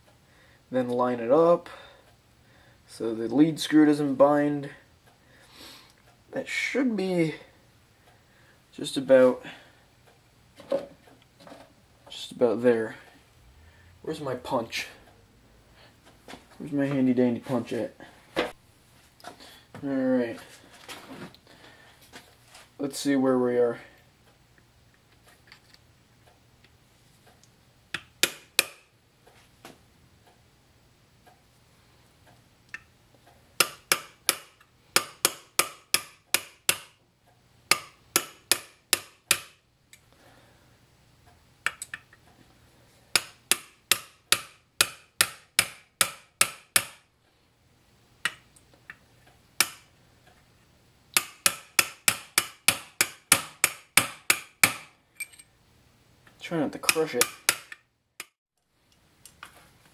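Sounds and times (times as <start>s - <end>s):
hammer tapping on metal punch: 28.0s - 28.9s, 33.6s - 36.9s, 37.7s - 39.6s, 43.2s - 47.0s, 49.6s - 49.9s, 51.2s - 54.9s, 56.8s - 58.3s.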